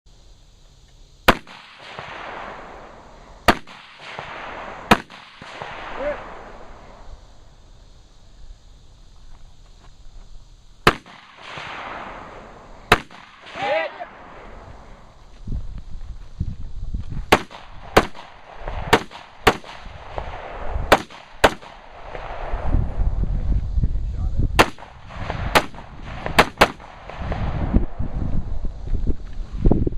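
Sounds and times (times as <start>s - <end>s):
rifle shots: 1.3s - 6.7s, 10.8s - 14.6s, 17.3s - 22.5s, 24.6s - 27.6s.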